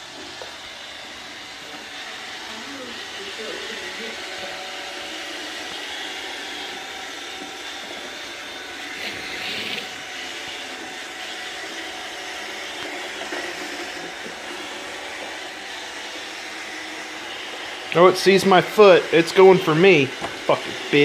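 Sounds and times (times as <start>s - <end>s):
robot vacuum whirring: 0.0s - 21.0s.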